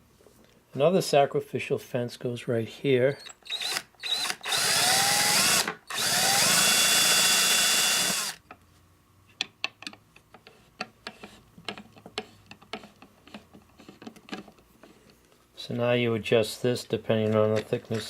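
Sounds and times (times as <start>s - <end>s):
power drill running: 3.4s - 8.4s.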